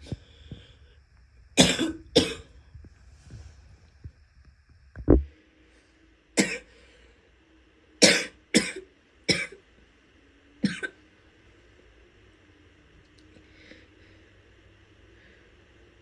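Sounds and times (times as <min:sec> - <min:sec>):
woman coughing: 0:01.6 - 0:02.5.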